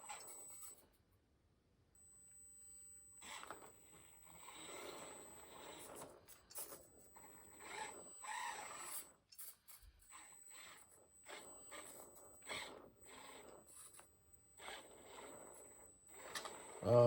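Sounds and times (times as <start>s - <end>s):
thin high whine: 2.0s - 17.0s
toy car scraping on obstacles: 7.4s - 14.0s, 14.6s - 16.8s.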